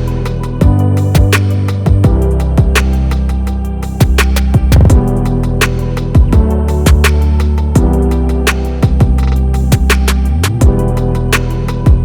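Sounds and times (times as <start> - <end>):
low bass notes: 0.0 - 12.0
sharp percussion hits: 4.0 - 5.1.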